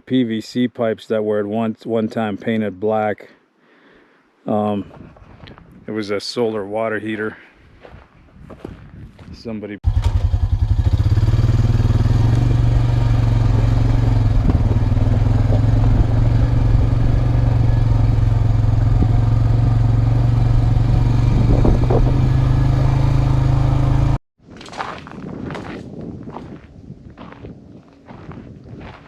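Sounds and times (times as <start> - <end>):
atv engine running: 9.8 - 24.2.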